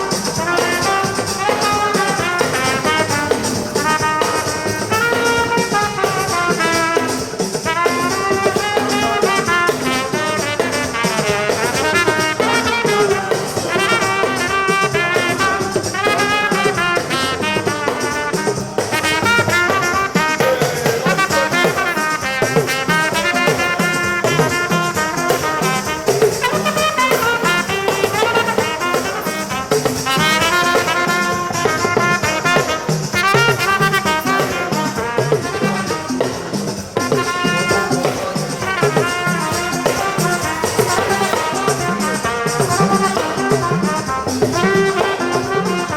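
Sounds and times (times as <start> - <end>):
drum kit beat: 0.0 - 45.9
upbeat brass music: 0.0 - 45.9.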